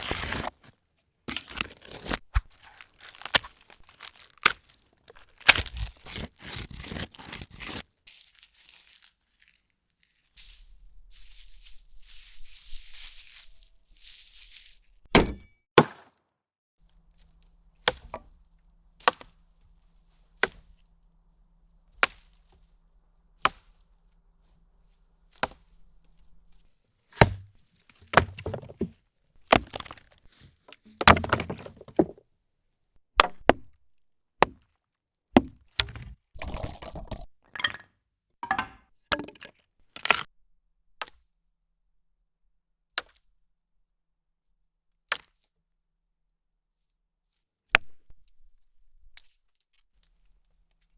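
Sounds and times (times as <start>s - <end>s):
branches snapping and cracking: 0.0s - 10.2s, 27.2s - 32.2s, 40.0s - 40.3s.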